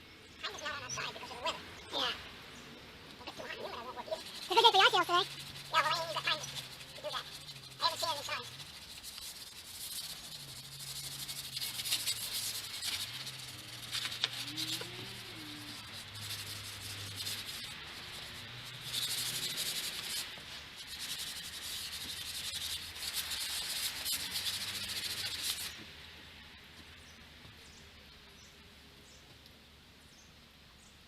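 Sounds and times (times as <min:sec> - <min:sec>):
faint low hum: 0:00.0 - 0:20.2
paintbrush rubbing on wood: 0:03.2 - 0:25.8.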